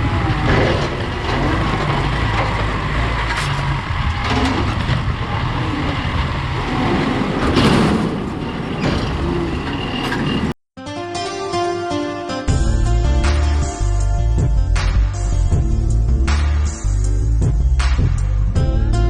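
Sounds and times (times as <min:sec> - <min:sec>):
vehicle engine running: 0:00.0 - 0:10.6.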